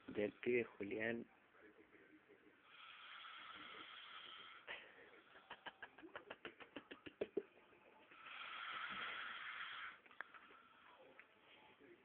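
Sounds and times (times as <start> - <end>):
man snoring quietly: 2.6 - 5.3, 8.2 - 11.0.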